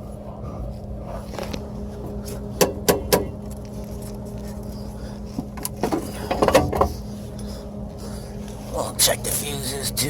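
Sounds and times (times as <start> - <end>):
low hum: 0.0 - 10.0
metallic knocks: 2.6 - 3.4.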